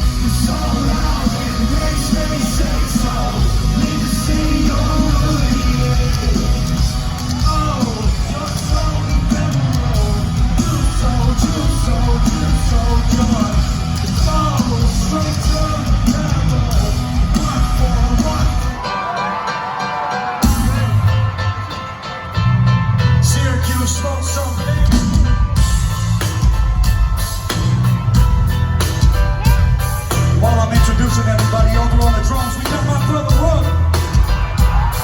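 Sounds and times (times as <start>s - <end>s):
sung and yelled vocals: 0.0s - 21.3s
live rock band playing: 0.0s - 35.0s.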